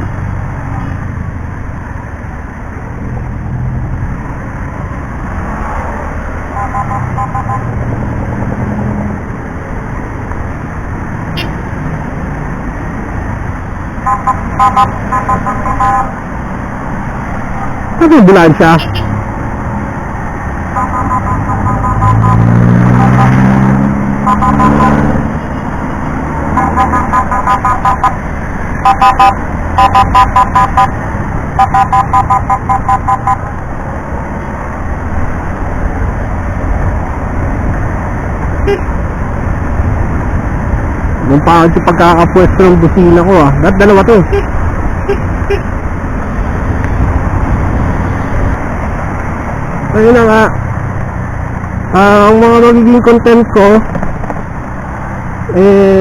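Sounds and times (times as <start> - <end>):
low engine hum: 0.0 - 56.0
wind and road noise: 0.0 - 56.0
scooter horn beeps: 6.5 - 7.7, 11.4 - 11.6, 14.1 - 16.2, 18.8 - 19.2, 20.8 - 23.4, 24.3 - 25.0, 26.6 - 28.2, 28.8 - 31.0, 31.6 - 33.5, 38.6 - 38.9, 44.3 - 45.7.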